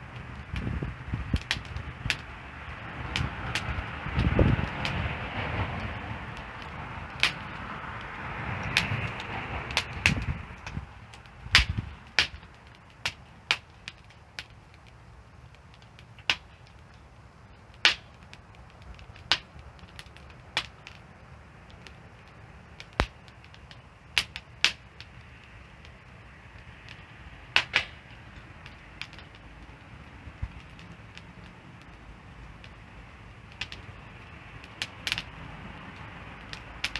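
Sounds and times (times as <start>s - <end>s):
wood fire crackling and popping: 0.0s - 36.9s.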